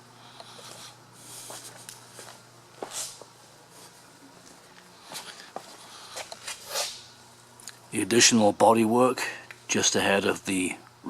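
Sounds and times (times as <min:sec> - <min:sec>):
low steady hum: 0:00.0 - 0:11.0
footsteps with scuffs: 0:00.5 - 0:07.0.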